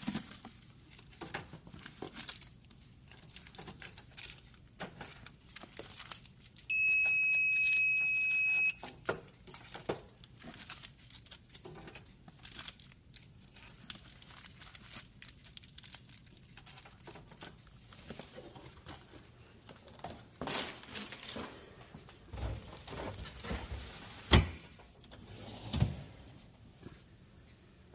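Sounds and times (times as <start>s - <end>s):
packaging crinkling: 0.0s - 6.7s, 9.2s - 21.6s.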